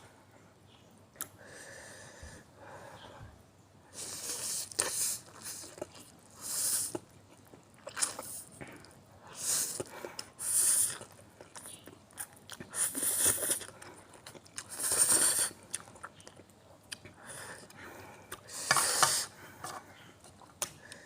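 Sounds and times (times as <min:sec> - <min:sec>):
person chewing noodles: 0:04.0 - 0:19.3.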